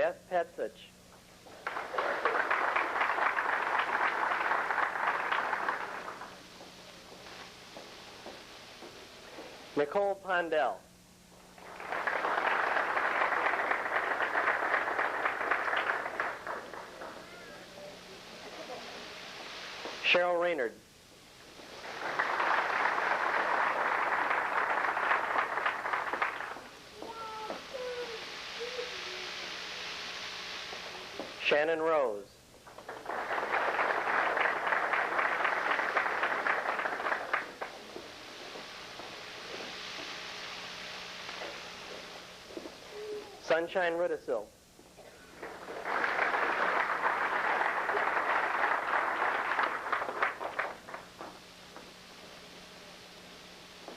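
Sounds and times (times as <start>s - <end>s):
audience applauding: 1.5s - 6.4s, 11.6s - 20.0s, 21.6s - 28.7s, 32.7s - 38.7s, 45.4s - 51.4s.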